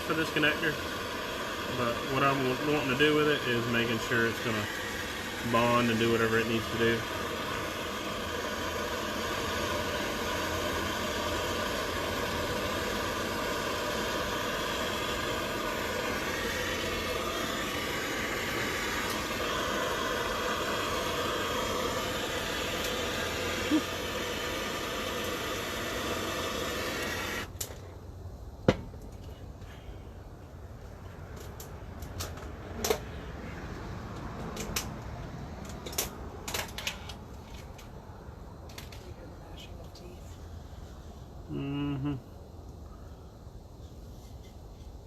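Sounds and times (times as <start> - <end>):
heating tool hissing: 0.0 - 27.6, 40.8 - 43.3.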